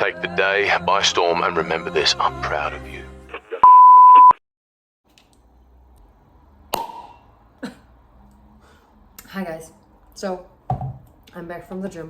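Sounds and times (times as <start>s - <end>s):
electronic beep: 3.6s - 4.4s.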